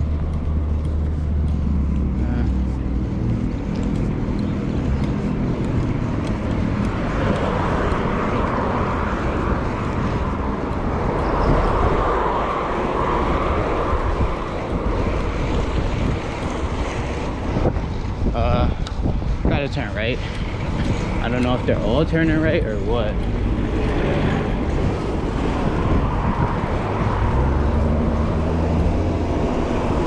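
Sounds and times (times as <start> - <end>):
street traffic: 0.0 - 30.0
wind rushing over microphone: 0.0 - 30.0.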